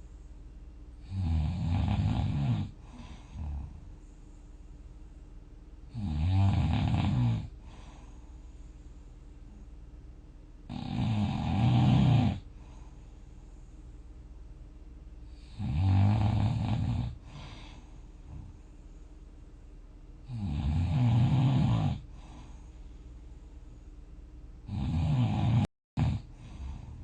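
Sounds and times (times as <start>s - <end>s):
person snoring: 1.0s - 3.8s, 5.9s - 8.2s, 10.7s - 12.8s, 15.3s - 18.6s, 20.2s - 22.7s, 24.7s - 27.0s.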